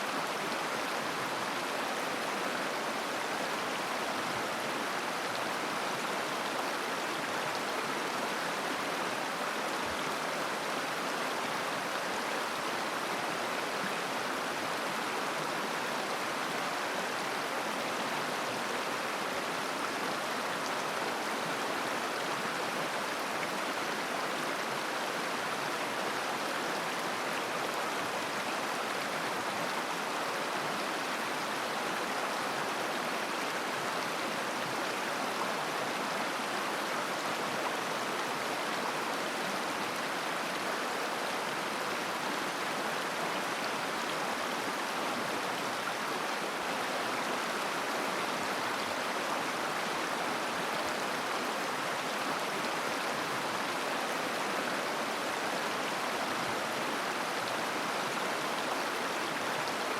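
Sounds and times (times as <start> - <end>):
river water babbling over stones: 0.0 - 59.9.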